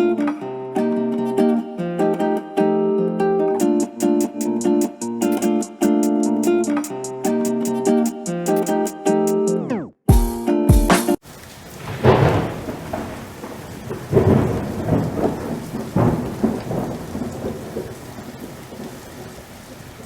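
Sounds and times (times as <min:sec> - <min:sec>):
rain falling: 0:11.2 - 0:20.0
thunder rumbling: 0:11.4 - 0:20.0.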